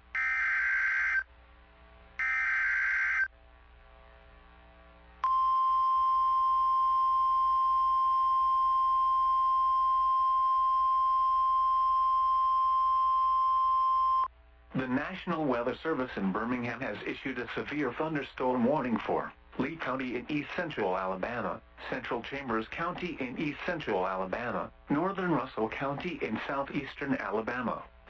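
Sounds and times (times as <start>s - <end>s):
steady warning alarm tone: 0.1s - 1.2s, 2.2s - 3.3s.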